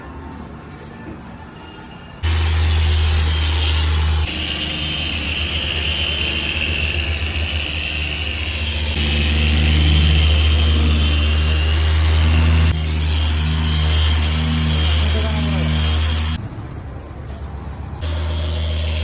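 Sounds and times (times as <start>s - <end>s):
high whine: 2.2s - 16.4s
machine polisher motor hum: 2.2s - 16.4s.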